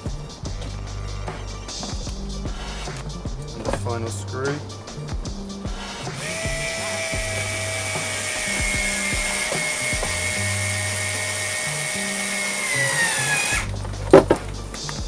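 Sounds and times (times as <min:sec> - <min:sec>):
cordless screwdriver motor whining: 0:06.2 - 0:13.7.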